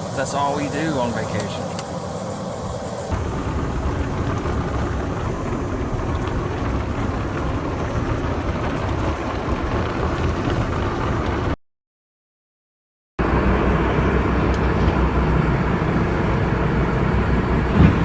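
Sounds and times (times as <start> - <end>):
hiss: 0.0 - 9.2
vehicle road and engine rumble: 0.0 - 11.6, 13.2 - 18.0.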